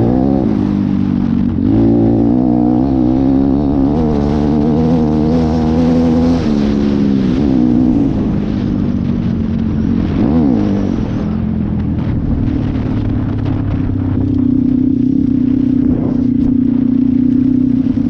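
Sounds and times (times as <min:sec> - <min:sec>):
dirt bike engine revving: 0:00.0 - 0:08.7, 0:14.2 - 0:18.0.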